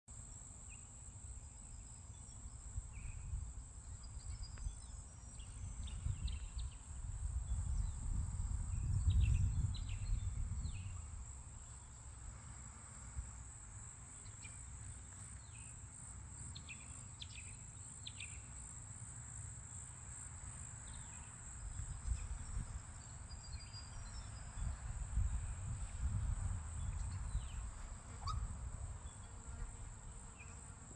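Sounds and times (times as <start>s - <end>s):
short bird chirps: 28.2s - 28.5s.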